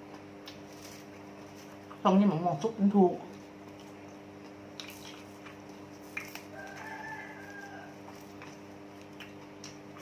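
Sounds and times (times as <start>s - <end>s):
steady low hum: 0.0s - 10.0s
faint rooster crowing: 6.3s - 8.4s.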